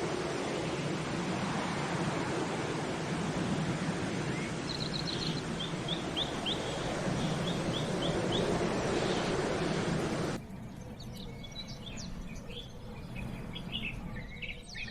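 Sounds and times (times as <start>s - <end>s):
steady rushing noise: 0.0s - 14.9s
bird chirping: 4.3s - 14.9s.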